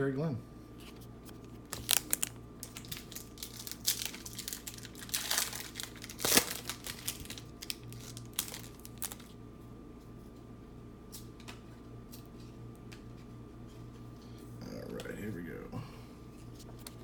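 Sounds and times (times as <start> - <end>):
card pack wrapper crinkling and tearing: 1.2 - 9.4.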